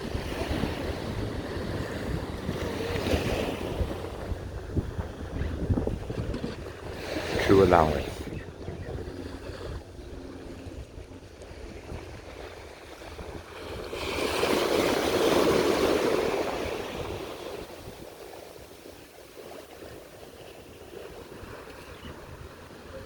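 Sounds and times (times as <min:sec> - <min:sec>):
low rumble of wind and surf: 0:00.0 - 0:23.0
ocean wave washing in: 0:06.9 - 0:08.3.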